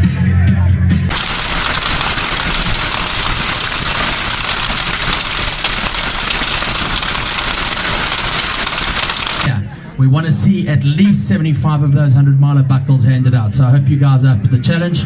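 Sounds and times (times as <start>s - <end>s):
rain pattering on a surface: 1.1s - 9.5s.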